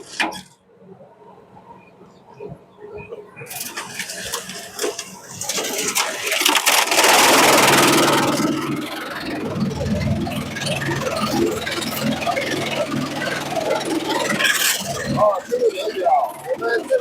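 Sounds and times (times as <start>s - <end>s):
shredder machine crackling and grinding: 3.5s - 17.0s.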